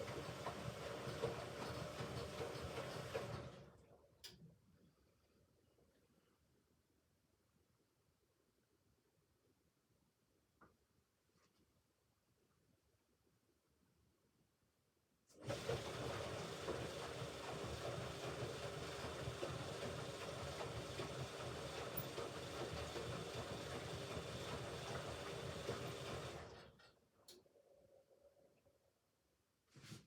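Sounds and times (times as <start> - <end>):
washing machine motor running: 0.0 - 3.8, 15.4 - 26.8.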